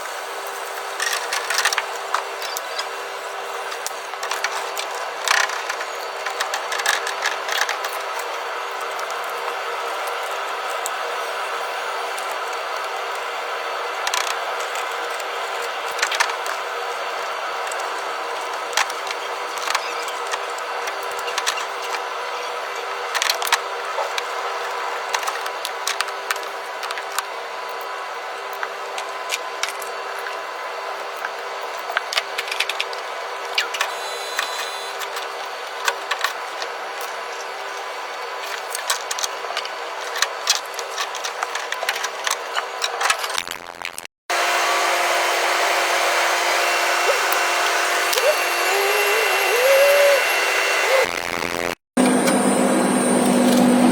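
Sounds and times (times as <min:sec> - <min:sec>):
machine hum: 0:44.3 - 0:53.9.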